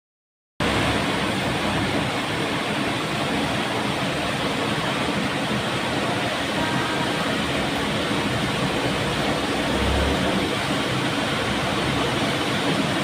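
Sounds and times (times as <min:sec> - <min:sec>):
loud rush of water: 0:00.6 - 0:13.0.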